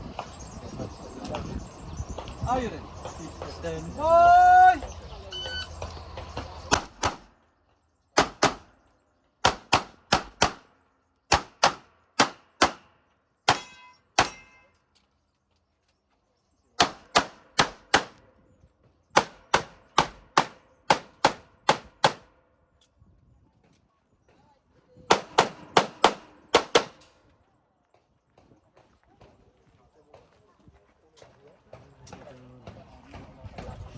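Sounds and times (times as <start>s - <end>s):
pistol firing rapid shots: 6.7s - 7.3s, 8.2s - 8.7s, 9.4s - 10.7s, 11.3s - 12.9s, 16.8s - 18.2s, 19.2s - 22.3s, 25.1s - 27.0s.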